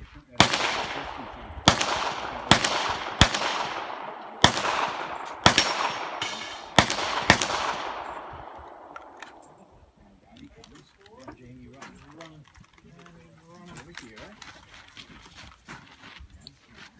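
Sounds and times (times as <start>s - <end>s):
echoing gunshots: 0.4s - 9.7s.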